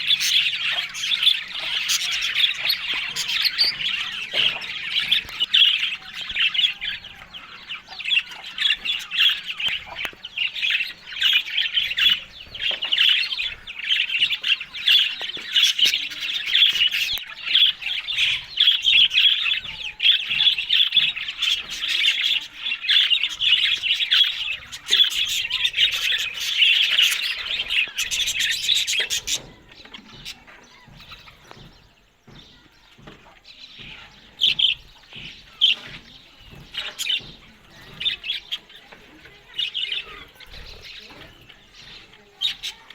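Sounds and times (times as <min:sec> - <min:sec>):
budgerigars chattering and warbling: 0:00.0 - 0:42.9.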